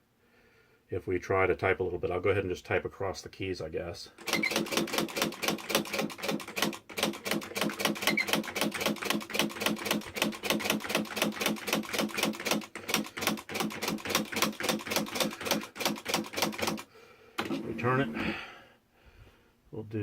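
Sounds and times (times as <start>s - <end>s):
typewriter keystroke clacks: 4.2s - 16.9s.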